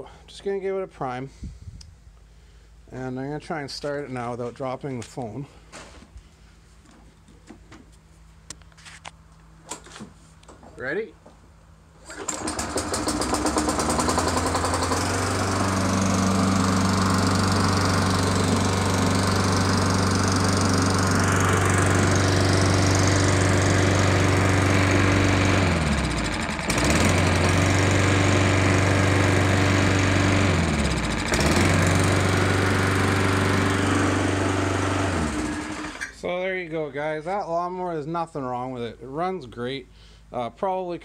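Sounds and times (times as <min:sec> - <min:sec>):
lawn mower engine running: 0:12.0 - 0:36.1.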